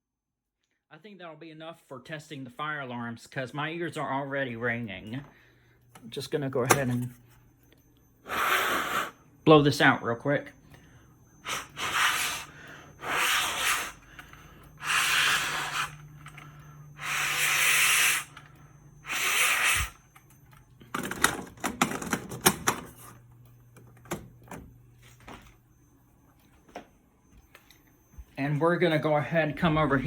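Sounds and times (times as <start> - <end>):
person blowing hard: 8.2 - 9.2, 11.4 - 14.0, 14.8 - 16.0, 17.0 - 18.3, 19.0 - 20.0.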